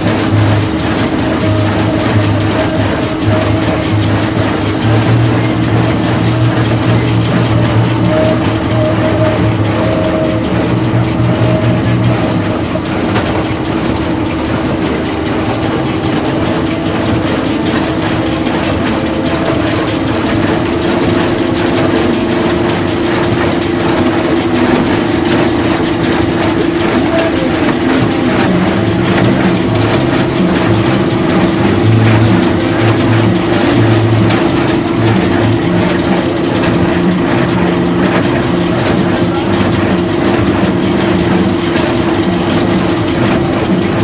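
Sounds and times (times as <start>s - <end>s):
low uneven pulsing: 0.0s - 44.0s
machinery whine: 0.0s - 44.0s
tractor engine running: 0.0s - 44.0s.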